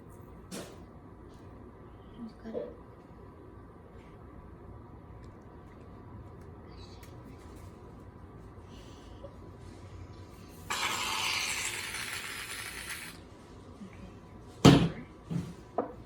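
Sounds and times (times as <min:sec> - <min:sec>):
aerosol can hissing: 0:10.6 - 0:13.2.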